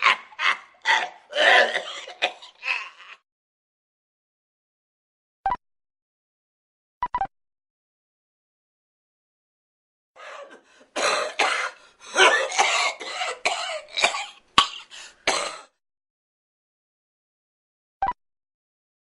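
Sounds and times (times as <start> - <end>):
person coughing and choking: 0.0 - 3.2, 10.2 - 15.8.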